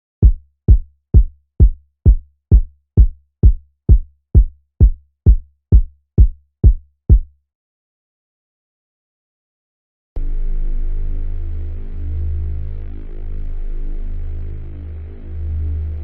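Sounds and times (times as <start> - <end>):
electronic kick drum hits: 0.2 - 7.2.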